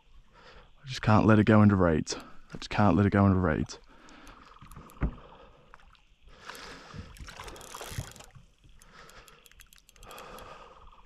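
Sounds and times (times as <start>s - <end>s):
water splashing around fish: 4.1s - 10.2s
dull knocks: 5.0s - 5.2s.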